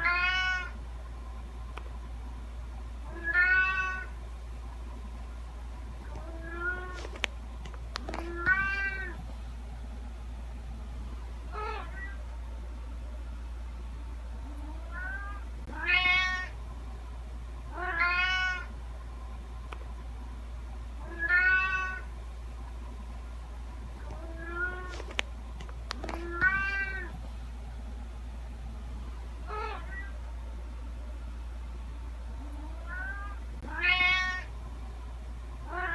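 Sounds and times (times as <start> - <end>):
cat meowing: 0.0 - 0.7, 3.1 - 4.1, 6.2 - 7.0, 8.2 - 9.2, 14.9 - 16.5, 17.8 - 18.7, 21.0 - 22.0, 24.2 - 24.9, 26.2 - 27.1, 29.5 - 30.1, 32.8 - 34.5, 35.7 - 35.9
steady low hum: 0.0 - 35.9.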